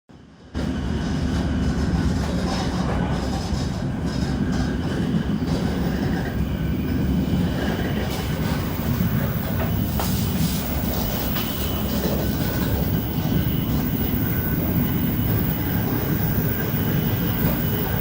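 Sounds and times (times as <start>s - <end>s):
train running rumble: 0.1s - 18.0s
faint high whining tones: 5.6s - 18.0s.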